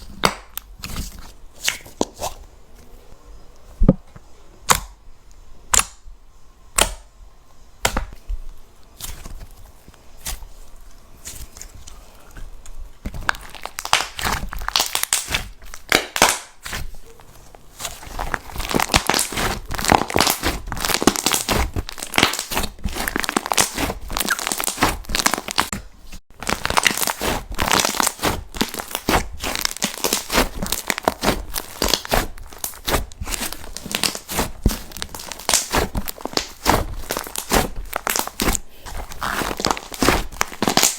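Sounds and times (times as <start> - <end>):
slime crackling when squeezed: 13.2 - 16.8, 17.8 - 25.7, 26.4 - 40.9.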